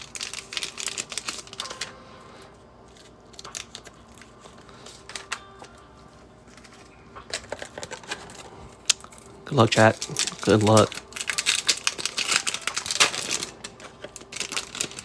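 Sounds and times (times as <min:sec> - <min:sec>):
plastic crinkling: 0:00.0 - 0:05.7, 0:06.4 - 0:15.0.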